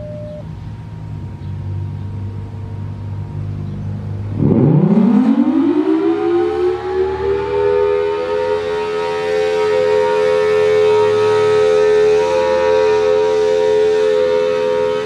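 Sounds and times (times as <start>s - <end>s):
warning siren winding up: 4.4s - 15.0s.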